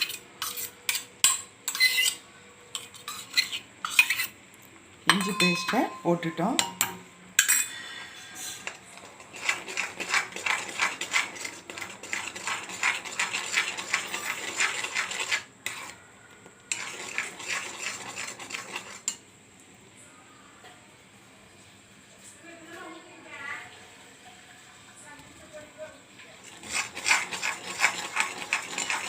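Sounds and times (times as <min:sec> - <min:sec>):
spoon scraping and clinking pan: 0:00.0 - 0:04.3, 0:05.1 - 0:07.9, 0:16.7 - 0:19.2, 0:26.5 - 0:29.0.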